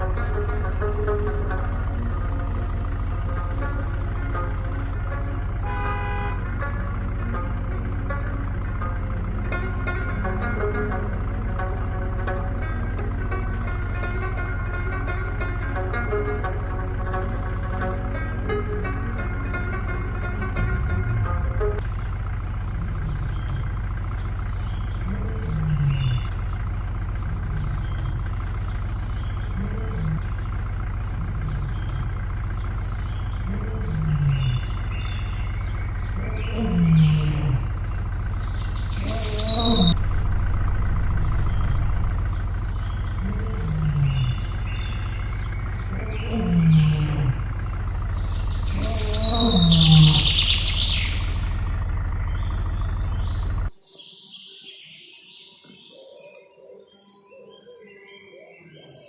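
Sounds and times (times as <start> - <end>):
low falling calls: 0.0 - 20.8, 21.8 - 53.8
steady low hum: 0.0 - 53.8
small birds chirping: 21.8 - 59.0.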